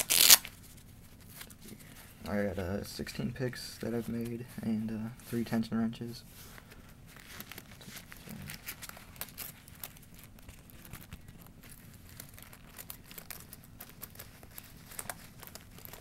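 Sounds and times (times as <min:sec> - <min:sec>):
soft handling rustles: 0:00.1 - 0:16.0.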